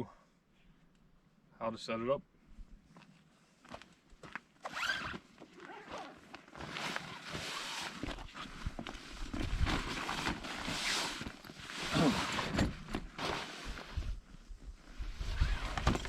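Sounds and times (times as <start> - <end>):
zipper being pulled open: 4.6 - 8.6, 9.7 - 14.0, 15.2 - 16.0
bag rustling: 4.7 - 14.0.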